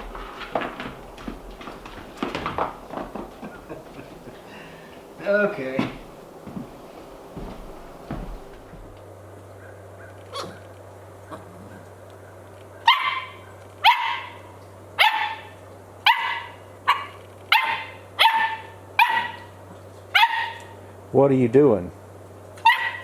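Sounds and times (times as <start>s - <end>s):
puppy barking: 9.6s - 10.6s, 12.8s - 20.8s, 22.6s - 23.0s.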